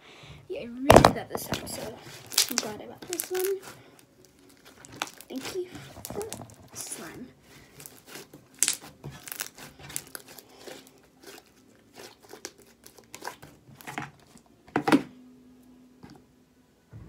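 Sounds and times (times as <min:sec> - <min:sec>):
slime clicking and popping: 0:02.2 - 0:03.5, 0:08.0 - 0:10.4.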